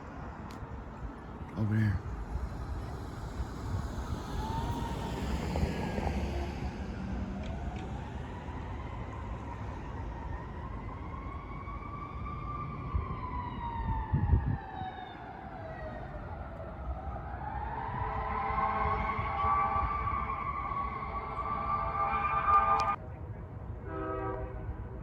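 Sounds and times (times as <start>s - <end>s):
siren wailing: 7.1s - 23.0s.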